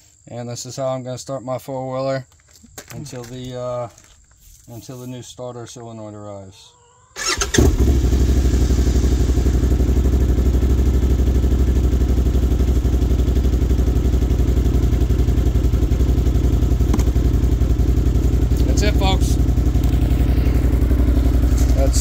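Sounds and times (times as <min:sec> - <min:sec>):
atv engine idling: 0:07.2 - 0:22.0.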